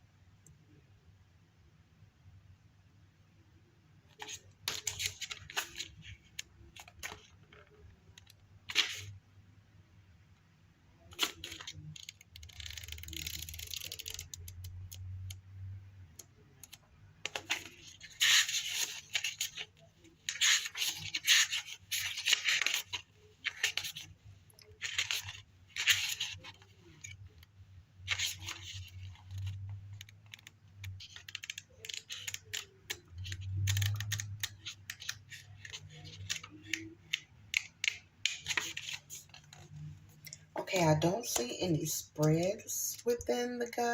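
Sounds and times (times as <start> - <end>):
paper pages rustling: 4.2 - 9.1, 11.1 - 14.3, 16.7 - 27.2, 28.1 - 39.8.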